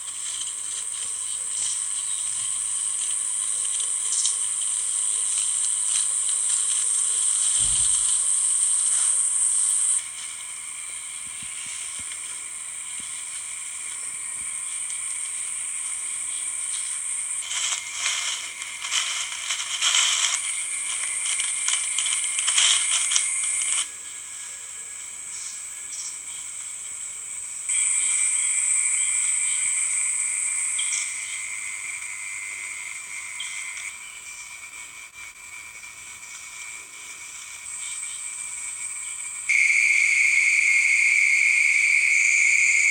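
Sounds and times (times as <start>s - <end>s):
insects buzzing: 0.0s - 42.9s
rapid clicks and rustling: 16.7s - 23.9s.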